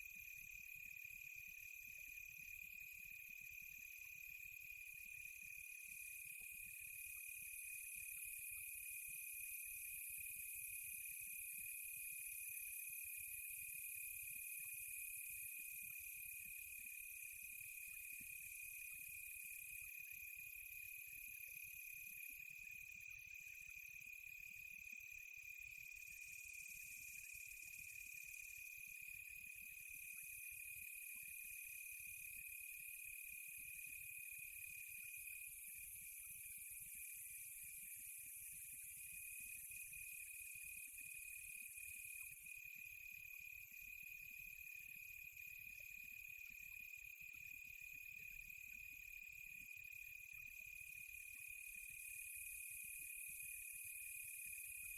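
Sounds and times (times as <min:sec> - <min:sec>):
insect chorus trilling: 0:25.7 - 0:44.7.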